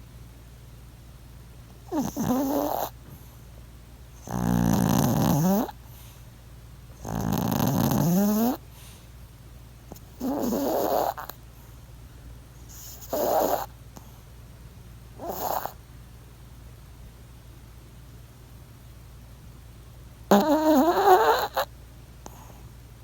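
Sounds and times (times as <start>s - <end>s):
dog snoring: 1.8s - 3.3s, 4.2s - 6.1s, 6.9s - 8.6s, 9.9s - 11.4s, 12.6s - 14.1s, 15.2s - 15.8s, 20.3s - 22.6s.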